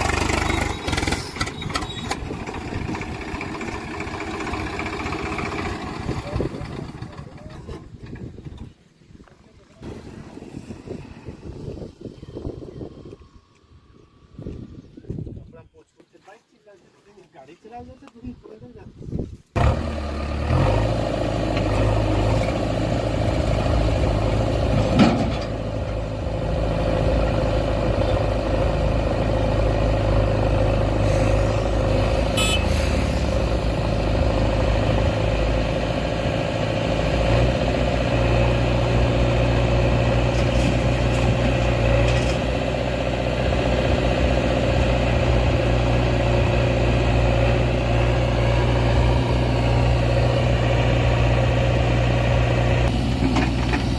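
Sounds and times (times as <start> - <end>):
diesel engine running: 0.0 - 14.7, 19.6 - 53.9.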